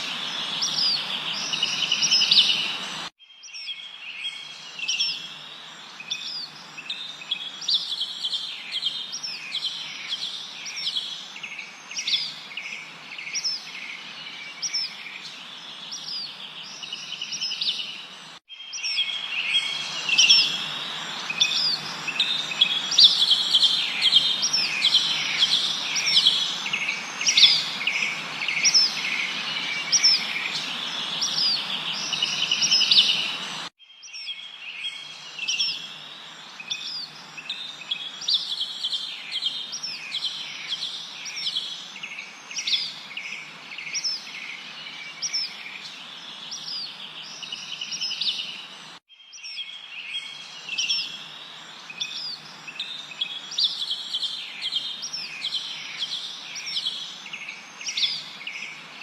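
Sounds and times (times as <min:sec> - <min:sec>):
steady background hiss: 0:00.0 - 0:03.1, 0:04.0 - 0:33.7, 0:49.9 - 0:59.0
small birds chirping and trilling: 0:00.0 - 0:59.0.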